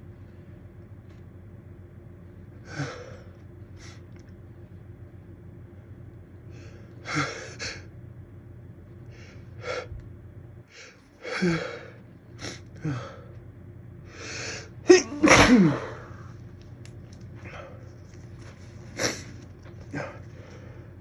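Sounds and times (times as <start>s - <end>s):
person sneezing: 14.9s - 16.3s.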